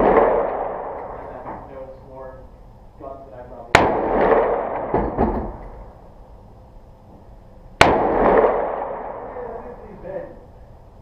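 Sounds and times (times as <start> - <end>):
rifle shot with echo: 0.0 - 1.6, 3.7 - 6.1, 7.8 - 10.2.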